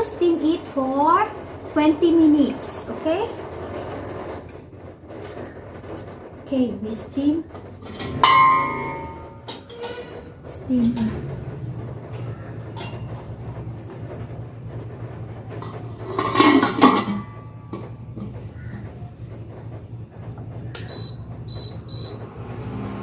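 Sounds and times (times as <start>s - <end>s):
dishware clattering: 7.8s - 11.2s, 16.0s - 17.9s.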